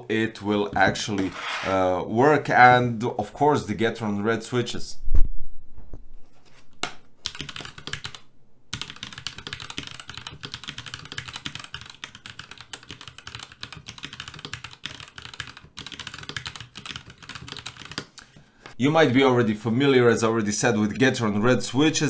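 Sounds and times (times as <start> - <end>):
fast mechanical keyboard typing: 7.3 - 18.1.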